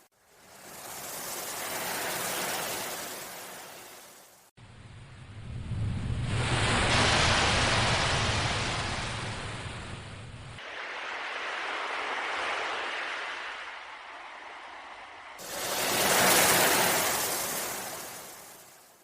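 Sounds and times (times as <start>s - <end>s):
sea waves washing in: 0.1s - 4.5s, 5.3s - 19.0s
low rumble: 4.6s - 10.6s.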